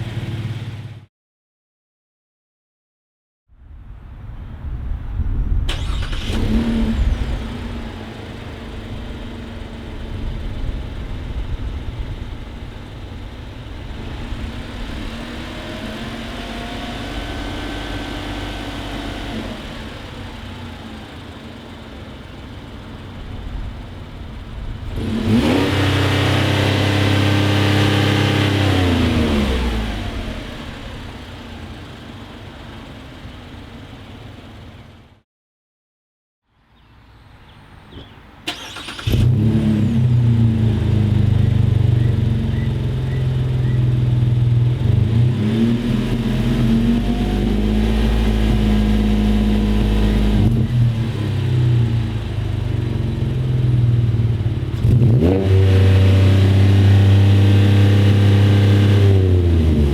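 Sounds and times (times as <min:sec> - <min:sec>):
car engine revving: 0:05.7 - 0:34.7, 0:37.9 - 0:59.9
car engine idling: 0:07.0 - 0:25.2, 0:29.8 - 0:35.2, 0:40.0 - 0:45.3, 0:49.8 - 0:54.8.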